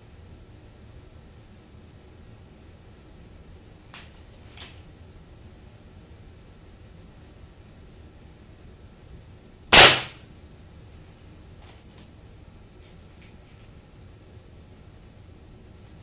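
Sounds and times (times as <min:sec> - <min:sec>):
air rifle shot: 0:09.7 - 0:10.2.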